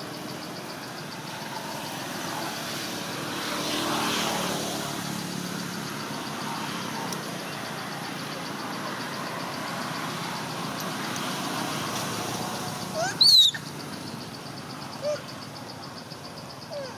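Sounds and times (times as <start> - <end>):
baby monkey squealing: 12.8 - 13.8, 15.0 - 15.3
monkey squeak: 12.9 - 13.8.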